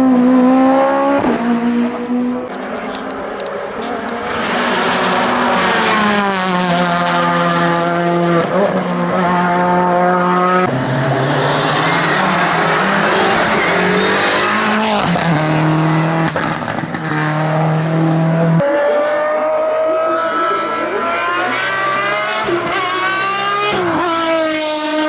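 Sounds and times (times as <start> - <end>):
race car engine accelerating: 0.0 - 25.0.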